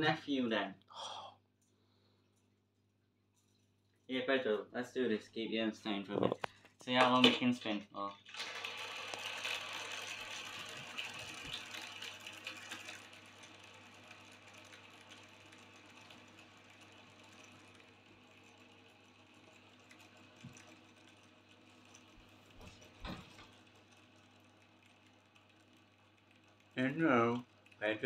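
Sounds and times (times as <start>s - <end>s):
fidget spinner whirring: 8.2s - 28.0s.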